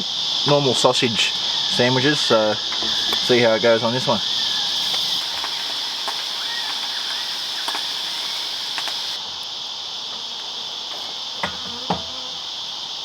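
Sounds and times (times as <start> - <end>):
insect chorus: 0.0 - 13.0
faint clicks: 2.7 - 9.2.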